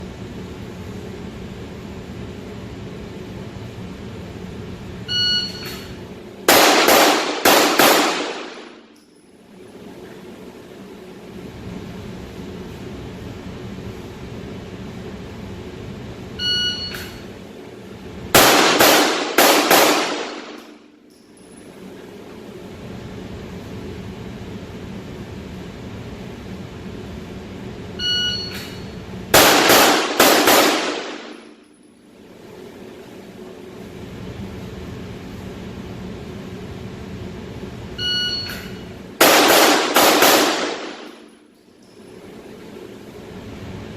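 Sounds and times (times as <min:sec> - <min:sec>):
shot timer beep: 0:05.1 - 0:05.9, 0:16.4 - 0:17.2, 0:28.0 - 0:29.0, 0:38.0 - 0:38.8
pistol shots: 0:06.5 - 0:08.8, 0:18.4 - 0:20.8, 0:29.4 - 0:31.5, 0:39.2 - 0:41.2.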